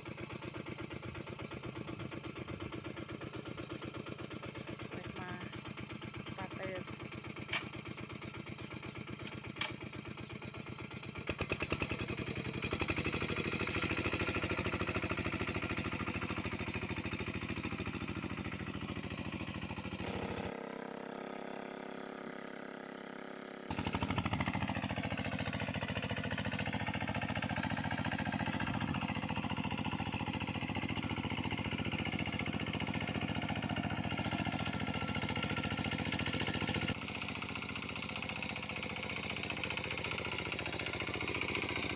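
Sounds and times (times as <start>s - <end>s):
engine running with knocking beat: 0.0s - 41.9s.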